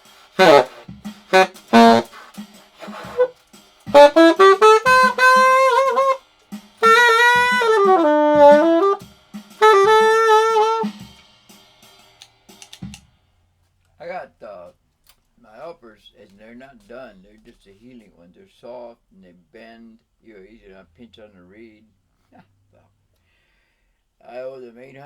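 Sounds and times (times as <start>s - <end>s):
solo saxophone: 0.0s - 6.2s, 6.8s - 9.0s, 9.6s - 11.0s.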